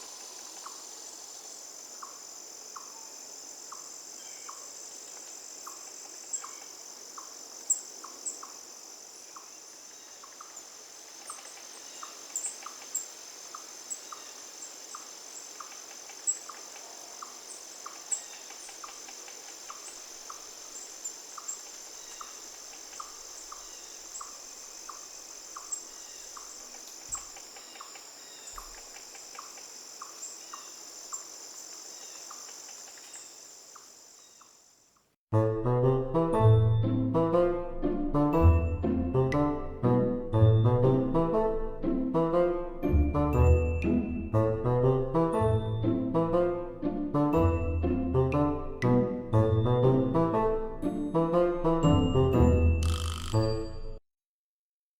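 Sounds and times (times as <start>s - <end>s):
cricket and insect chorus: 0.0s - 35.0s, 52.8s - 53.4s
soft chirp: 3.7s - 31.3s.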